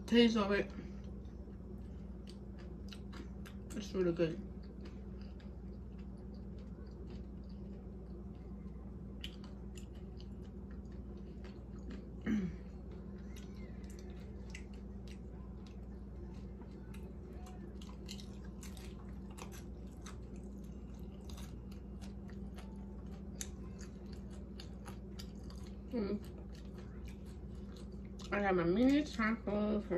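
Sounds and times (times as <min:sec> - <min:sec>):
person chewing food: 0:00.9 - 0:03.8, 0:04.4 - 0:28.3.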